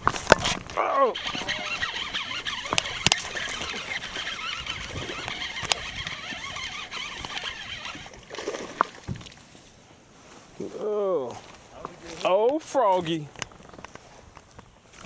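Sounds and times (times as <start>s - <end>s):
fishing reel clicks: 0.3s - 8.1s
fishing reel winding hiss: 1.2s - 8.1s.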